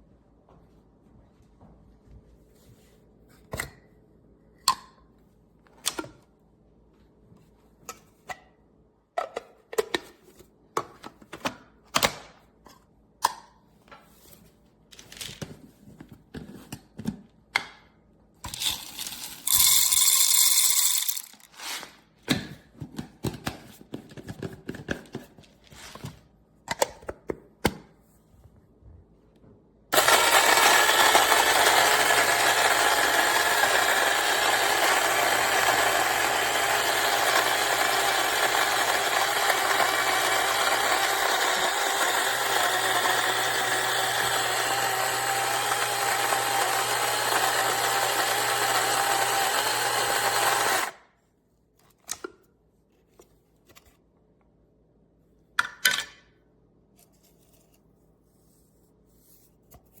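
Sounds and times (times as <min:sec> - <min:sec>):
coffee grinder motor grinding: 0:18.5 - 0:21.5, 0:29.9 - 0:51.0.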